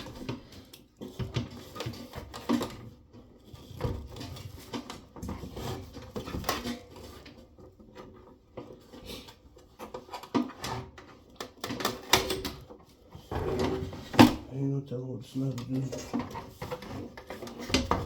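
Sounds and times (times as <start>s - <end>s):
hard objects clattering: 15.6s - 18.0s.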